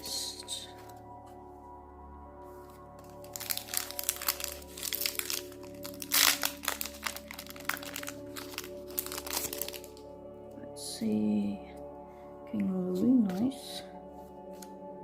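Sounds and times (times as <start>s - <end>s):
soft background music: 0.0s - 15.0s
foil wrapper crinkling: 3.0s - 10.0s.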